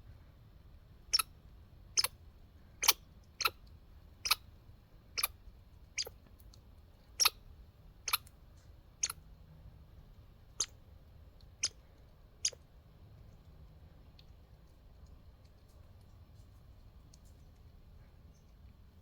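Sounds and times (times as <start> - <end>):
squirrel clicking: 2.8 - 4.4, 8.1 - 8.3.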